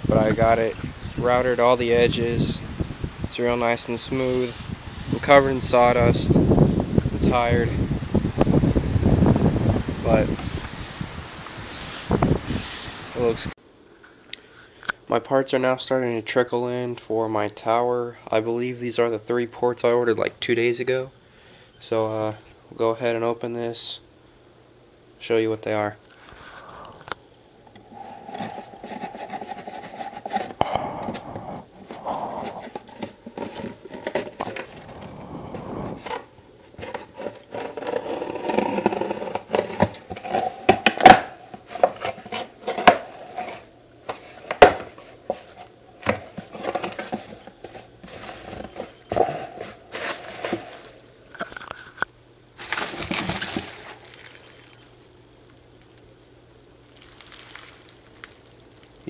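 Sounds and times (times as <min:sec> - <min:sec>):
knocks and scrapes: 0:27.8 - 0:52.1
long ripping rasp: 0:27.9 - 0:30.6, 0:36.0 - 0:40.8
cardboard box tearing and rustling: 0:28.1 - 0:30.6, 0:31.8 - 0:35.1, 0:35.9 - 0:51.0, 0:52.6 - 0:54.5.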